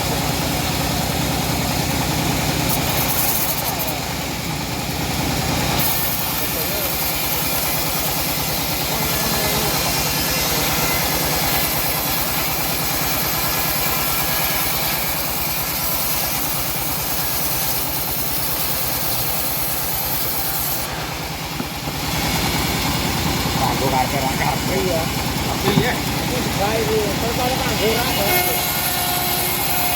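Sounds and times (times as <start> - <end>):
bandsaw blade rasping through log: 2.1 - 4.2, 4.9 - 29.9.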